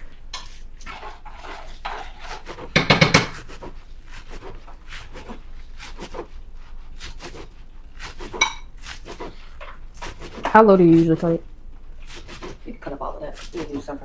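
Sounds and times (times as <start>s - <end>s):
knife chopping on cutting board: 1.8s - 6.3s, 7.0s - 10.6s.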